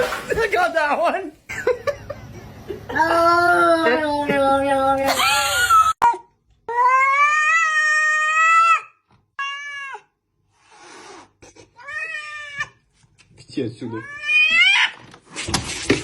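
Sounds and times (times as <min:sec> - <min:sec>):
cat yowling: 0:05.5 - 0:10.1, 0:11.8 - 0:12.8, 0:14.0 - 0:15.0.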